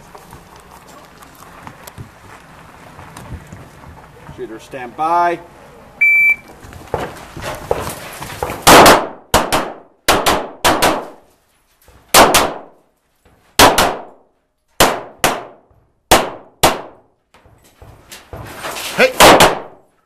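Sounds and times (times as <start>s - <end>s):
pistol shots: 8.6s - 11.2s, 12.1s - 12.7s, 13.6s - 14.2s, 14.8s - 17.1s, 19.2s - 19.8s.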